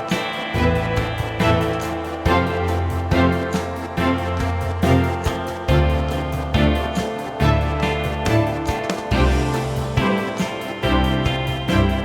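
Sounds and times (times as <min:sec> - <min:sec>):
plucked guitar: 0:00.0 - 0:12.0
bass line: 0:00.6 - 0:10.1.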